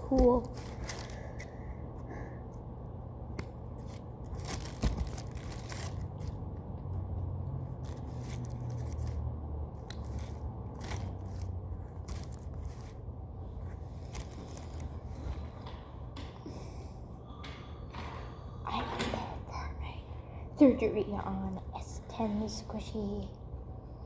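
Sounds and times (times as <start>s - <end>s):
steady low hum: 0.0s - 24.0s
scissors snipping foam: 9.8s - 13.0s.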